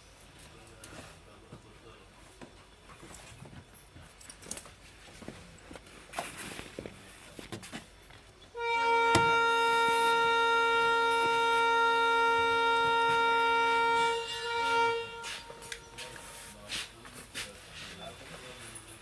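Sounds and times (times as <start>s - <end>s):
train horn blasts: 8.5s - 16.5s.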